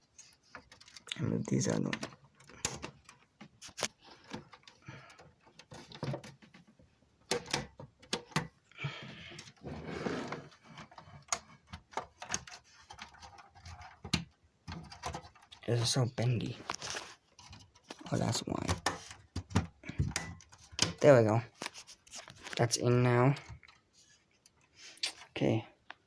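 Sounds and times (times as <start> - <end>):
plastic clicking against metal case: 0.3 - 8.6.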